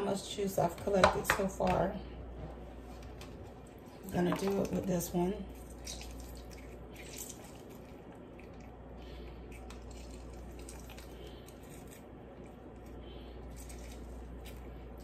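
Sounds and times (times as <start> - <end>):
lemon squishing: 4.1 - 15.0
juice dripping into container: 5.5 - 15.0.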